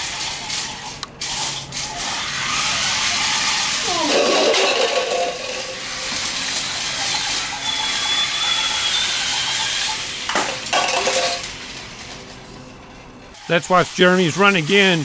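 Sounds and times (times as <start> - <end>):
toy vehicles racing on a track: 0.0 - 15.0
plastic clattering and clinking: 3.9 - 6.5, 10.3 - 11.5.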